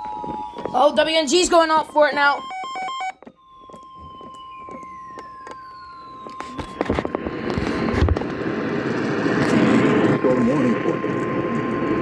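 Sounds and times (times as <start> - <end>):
steady alarm tone: 0.0 - 11.0
radio static crackles: 4.8 - 12.0.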